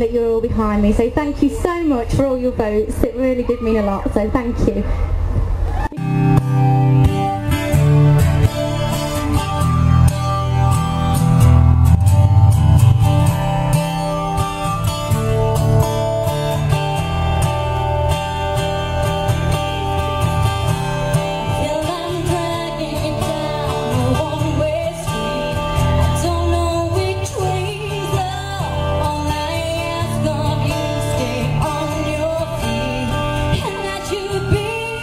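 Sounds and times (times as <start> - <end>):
guitar music with bass: 5.9 - 35.0
person singing: 21.2 - 35.0.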